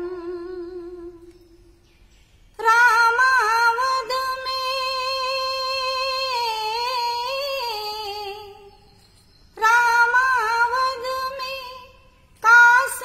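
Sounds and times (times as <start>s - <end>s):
woman singing devotional song: 0.0s - 1.8s, 2.5s - 13.0s.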